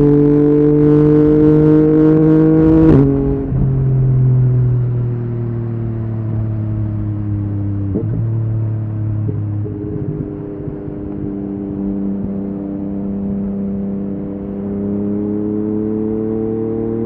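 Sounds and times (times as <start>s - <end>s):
motorcycle engine revving: 0.0s - 17.0s
exhaust crack: 7.8s - 11.7s.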